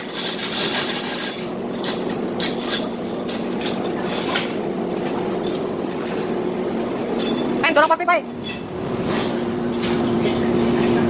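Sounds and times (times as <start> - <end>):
metal clanks and rattles: 0.0 - 6.4
steady machine hum: 0.0 - 11.0.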